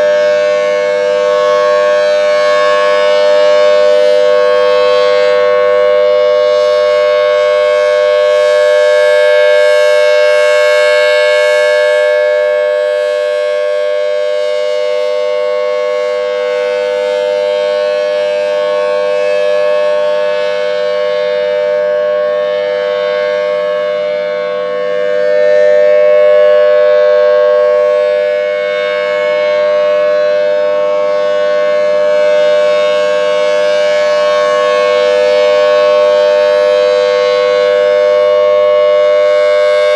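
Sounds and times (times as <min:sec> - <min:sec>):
tornado siren steady tone: 0:00.0 - 0:39.9.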